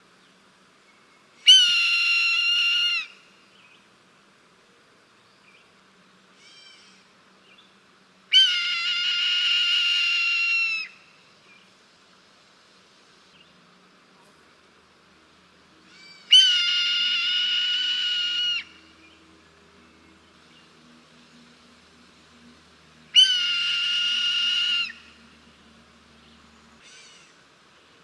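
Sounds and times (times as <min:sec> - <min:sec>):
hawk screaming: 0:15.9 - 0:18.8, 0:23.1 - 0:25.1.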